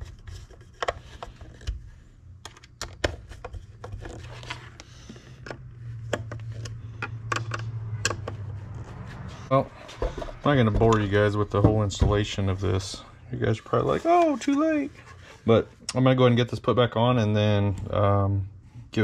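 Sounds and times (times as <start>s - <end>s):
plastic clicks and scrapes: 0.0s - 9.0s
low steady hum: 0.0s - 19.0s.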